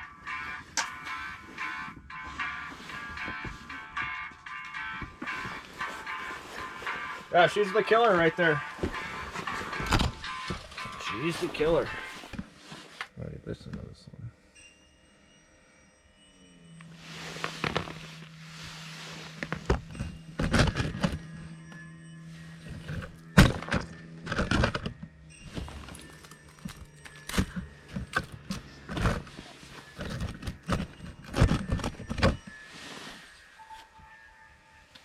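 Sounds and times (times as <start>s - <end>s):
fishing gear clicks and knocks: 22.6s - 32.5s.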